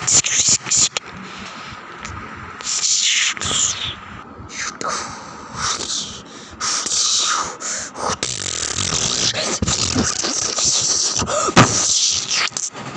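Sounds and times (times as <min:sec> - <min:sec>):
mouth-made breathy hisses: 0:02.6 - 0:12.8.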